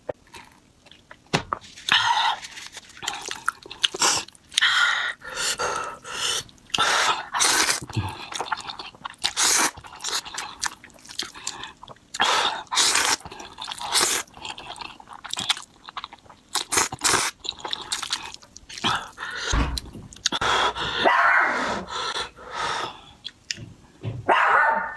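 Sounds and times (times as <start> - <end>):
chewing and biting food: 0.3 - 4.8, 5.8 - 21.0.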